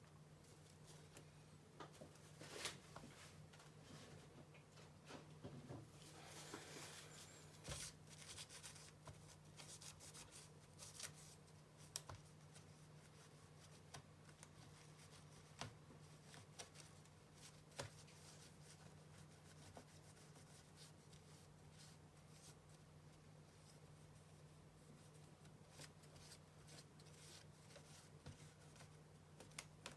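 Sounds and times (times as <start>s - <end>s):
low steady hum: 0.0s - 9.4s.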